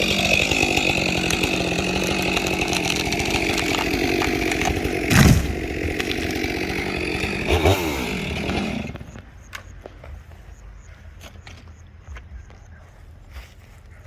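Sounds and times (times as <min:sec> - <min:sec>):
wood cracking and snapping: 0:00.0 - 0:09.2
chainsaw cutting at full throttle: 0:00.0 - 0:09.3.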